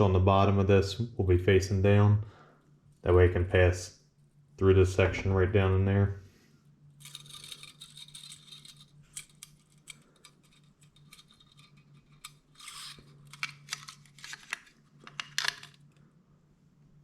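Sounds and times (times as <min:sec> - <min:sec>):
metal pistol parts clicking: 0:07.0 - 0:16.0.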